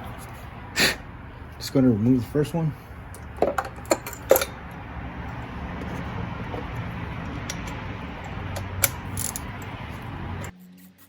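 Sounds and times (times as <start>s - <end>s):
steady background hum and hiss: 0.0s - 10.5s
metal clinks of ratchet: 7.5s - 9.8s.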